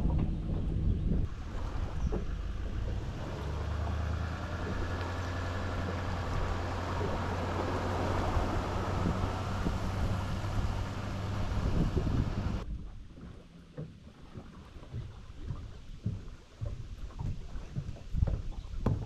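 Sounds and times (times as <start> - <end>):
outboard motor running: 0.0 - 19.0
wind and water noise: 0.0 - 19.0.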